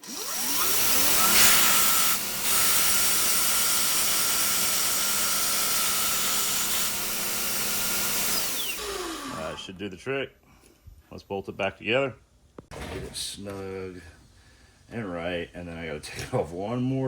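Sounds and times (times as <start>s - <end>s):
power grinder grinding steel: 0.0s - 9.7s.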